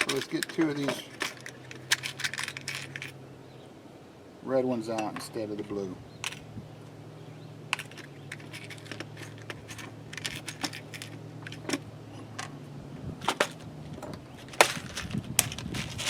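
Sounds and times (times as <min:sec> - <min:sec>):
plastic connectors clicking and rattling: 0:00.0 - 0:03.2, 0:04.9 - 0:06.5, 0:07.7 - 0:12.6, 0:13.2 - 0:16.0.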